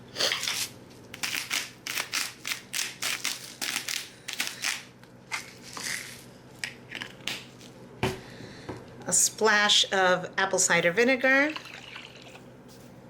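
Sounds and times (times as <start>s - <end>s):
salt grinder crunching: 0.4s - 7.2s.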